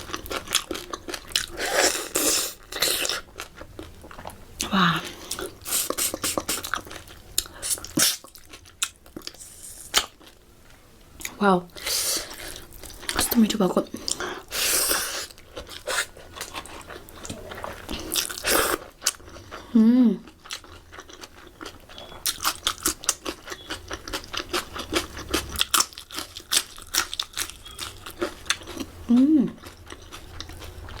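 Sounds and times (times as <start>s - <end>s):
close chewing: 0.0s - 4.4s, 12.3s - 31.0s
mouth clicks and smacks: 5.6s - 6.7s.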